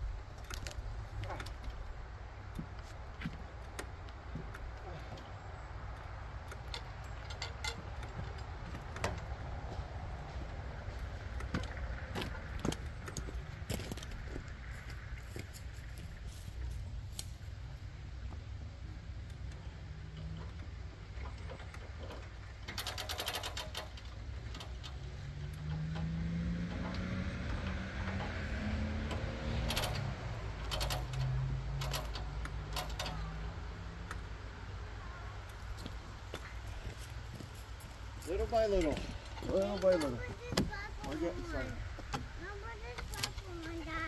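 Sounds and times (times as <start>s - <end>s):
motor low rumble: 0.0s - 44.0s
rapid metallic clicking: 22.5s - 26.0s, 29.6s - 33.4s.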